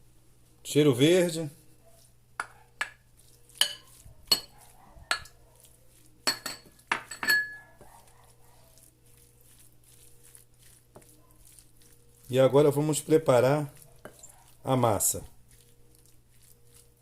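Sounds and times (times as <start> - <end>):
spoon clinking against bowl: 3.6 - 5.4, 6.2 - 7.7.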